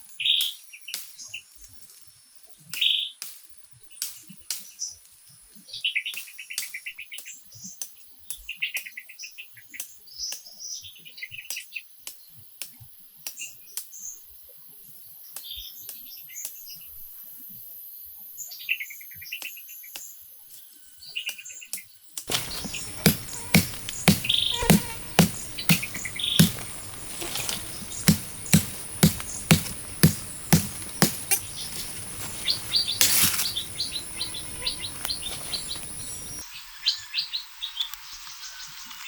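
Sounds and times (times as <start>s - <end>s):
bird calling in rapid trills: 22.3s - 36.4s
sharp clicks and taps: 22.3s - 36.4s.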